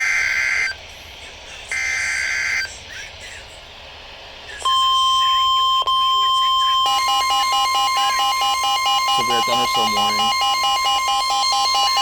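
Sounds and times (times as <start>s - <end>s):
raspy digital data bursts: 1.7s - 2.8s, 6.2s - 12.0s.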